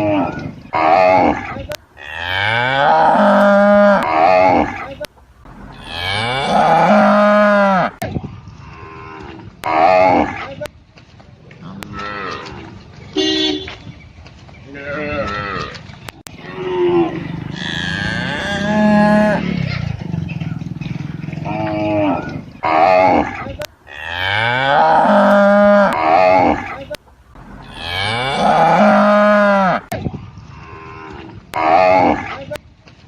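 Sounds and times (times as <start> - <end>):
cattle mooing: 0.0 - 8.0, 14.7 - 29.9, 30.5 - 32.3.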